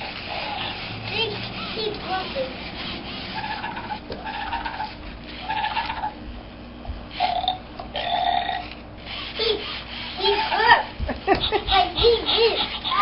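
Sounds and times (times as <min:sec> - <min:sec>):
toy electronic grunting calls: 0:00.0 - 0:00.9, 0:03.2 - 0:06.2, 0:07.2 - 0:08.8, 0:11.7 - 0:13.0.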